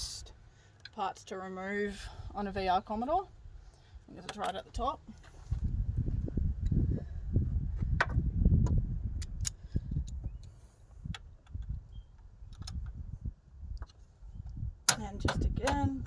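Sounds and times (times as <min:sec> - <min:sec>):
low rumbling handling noise: 0:04.2 - 0:16.0.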